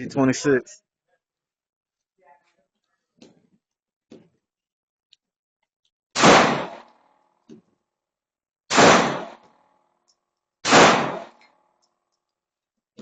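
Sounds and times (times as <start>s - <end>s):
pistol shots hitting steel targets: 6.2s - 7.1s, 8.7s - 9.6s, 10.6s - 11.6s.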